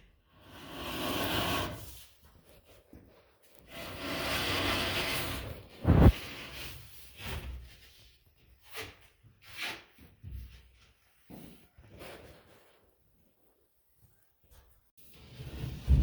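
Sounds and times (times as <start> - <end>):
drywall scraping along wood: 0.4 - 2.3, 3.6 - 7.6.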